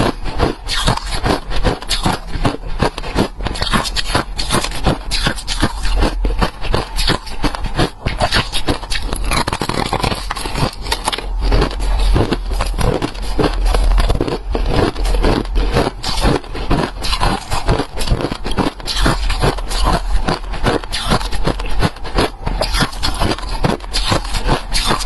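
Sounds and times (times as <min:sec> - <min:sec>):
ice being chewed: 0:00.0 - 0:25.0.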